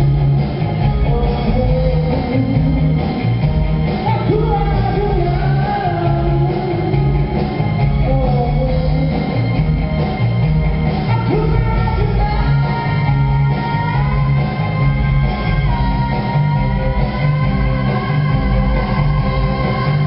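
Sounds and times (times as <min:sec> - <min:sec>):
rock band playing live: 0:00.0 - 0:20.0
person singing: 0:00.8 - 0:09.8, 0:11.0 - 0:20.0.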